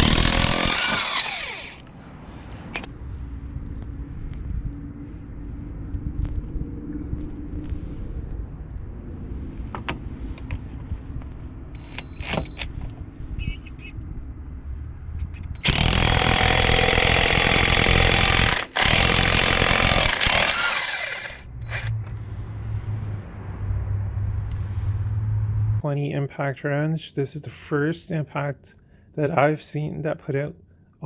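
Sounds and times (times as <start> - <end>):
low rumble: 0.0 - 17.2, 20.0 - 25.9.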